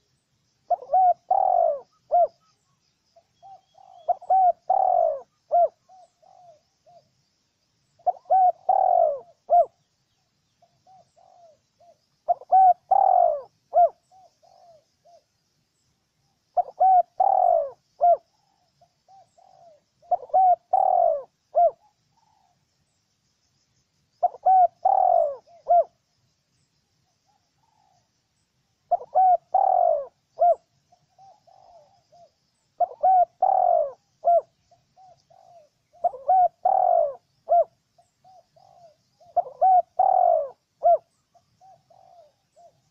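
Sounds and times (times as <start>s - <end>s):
dove cooing: 0.7s - 2.6s, 3.4s - 7.1s, 8.0s - 9.9s, 10.6s - 15.2s, 16.6s - 22.6s, 24.2s - 26.0s, 28.9s - 42.9s.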